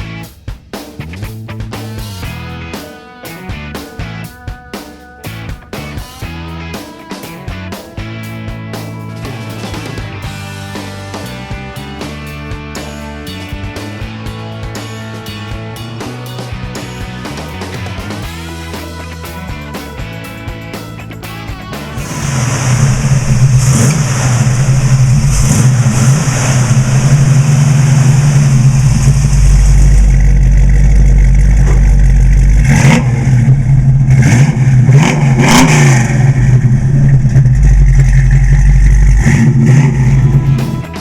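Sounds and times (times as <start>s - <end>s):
car engine running and revving: 21.8s - 41.0s.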